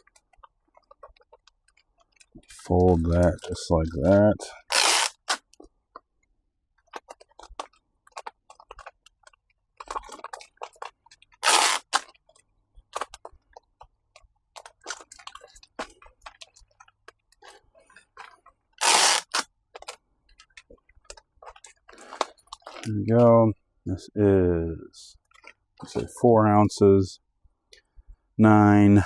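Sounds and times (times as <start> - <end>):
plastic mailer bag crinkling: 4.1 - 5.4, 11.4 - 12.1, 18.8 - 19.4
loud rasping bursts: 4.6 - 5.4, 11.4 - 12.0, 18.8 - 19.4.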